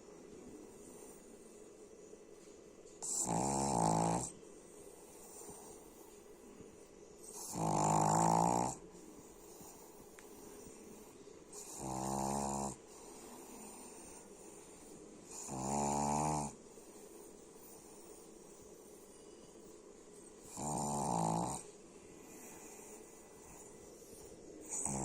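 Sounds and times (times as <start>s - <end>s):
person snoring: 11.6s - 12.8s, 15.3s - 16.6s, 20.5s - 21.6s, 24.7s - 25.0s.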